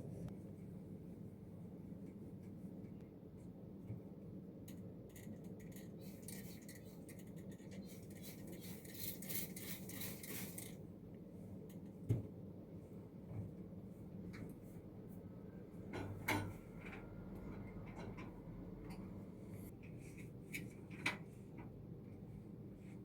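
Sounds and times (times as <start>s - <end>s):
low steady hum: 0.0s - 8.9s.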